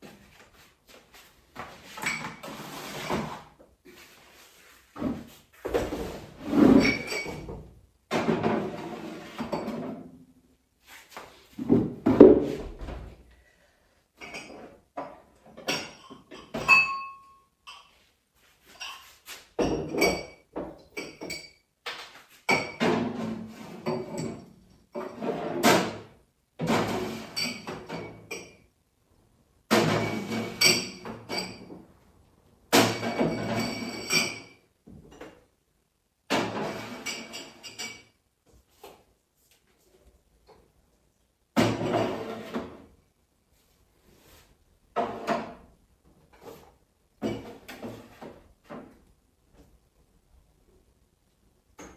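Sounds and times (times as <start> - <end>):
glass and dishes clinking: 6.8 - 7.6, 14.2 - 18.0, 18.7 - 23.1, 23.8 - 25.2, 27.2 - 28.7, 29.8 - 31.8, 32.8 - 35.3, 36.4 - 38.2.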